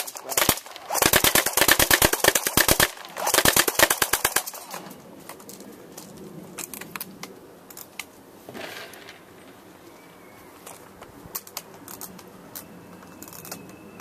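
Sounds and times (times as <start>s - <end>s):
airsoft gun firing bursts: 0.0s - 4.9s.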